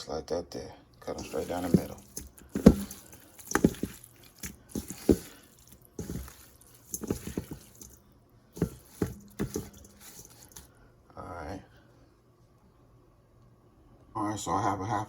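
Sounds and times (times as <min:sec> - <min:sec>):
wet squishy handling: 0:01.1 - 0:08.0, 0:08.6 - 0:10.7.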